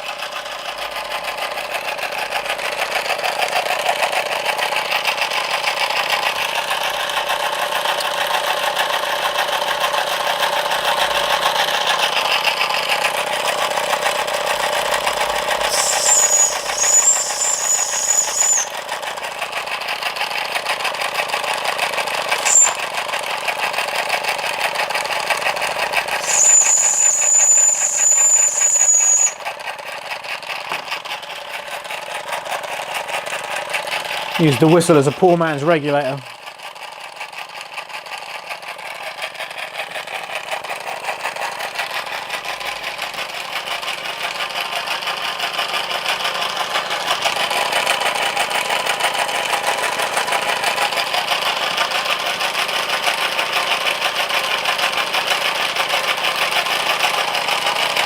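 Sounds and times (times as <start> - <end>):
model steam engine clatter: 0.0 - 58.0
steam whistle shrieking: 15.2 - 19.2, 22.4 - 23.0, 26.0 - 29.6.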